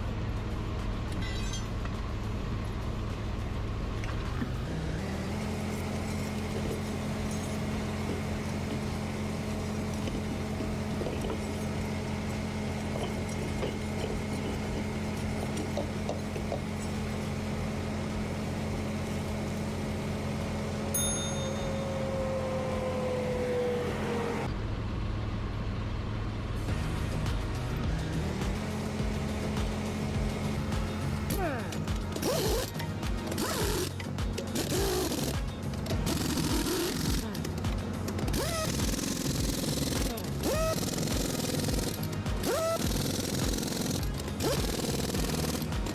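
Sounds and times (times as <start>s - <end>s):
vehicle engine running: 0.0s - 45.9s.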